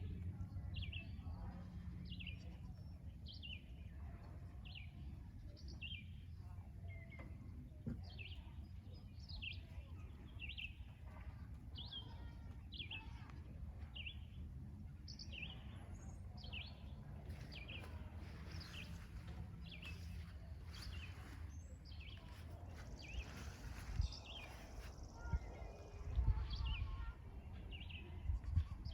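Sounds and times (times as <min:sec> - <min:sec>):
faint low rumble: 0:09.7 - 0:28.9.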